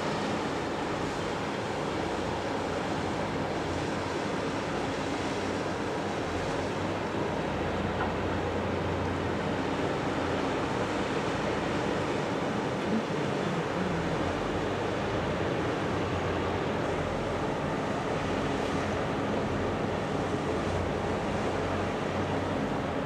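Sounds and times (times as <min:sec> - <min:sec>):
river water: 0:00.0 - 0:23.0.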